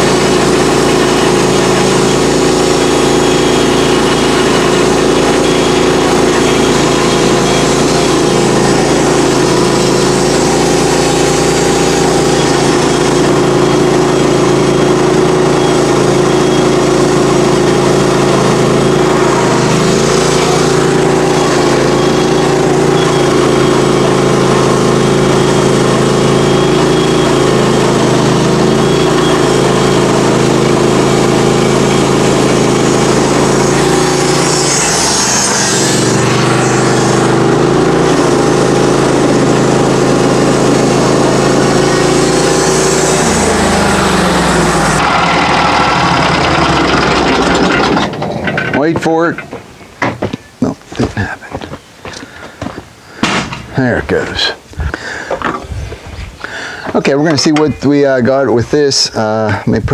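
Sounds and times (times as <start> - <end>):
sawmill engine droning: 0.0 - 59.9
band blade hissing through log: 33.4 - 37.2.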